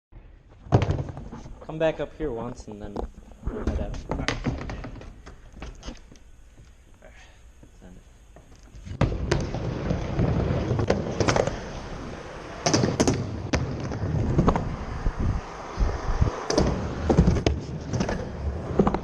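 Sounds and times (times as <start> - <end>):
skateboard wheels rumbling: 8.8 - 19.0.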